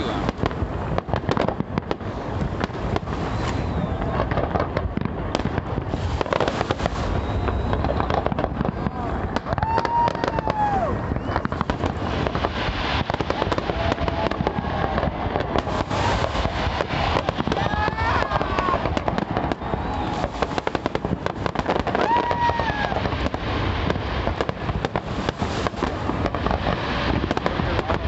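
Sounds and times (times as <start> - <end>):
fireworks bangs and crackles: 0.0 - 28.0.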